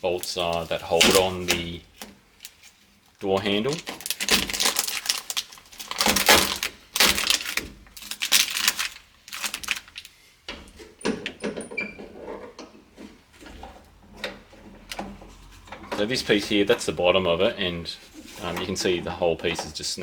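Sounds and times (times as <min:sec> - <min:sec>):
plastic sheet crinkling: 0:00.0 - 0:10.2.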